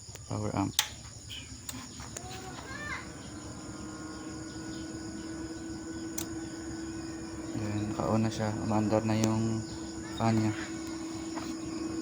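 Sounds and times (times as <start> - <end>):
amplifier cooling fans humming: 0.0 - 12.0
light clicks: 0.1 - 1.0, 6.1 - 6.4.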